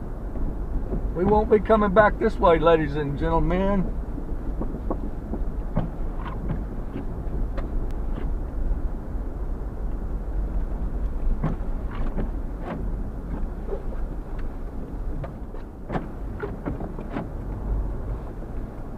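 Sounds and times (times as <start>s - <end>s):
car driving through snow: 0.0s - 18.9s
short knocks and thuds: 3.8s - 8.4s, 11.3s - 14.1s, 15.1s - 17.6s.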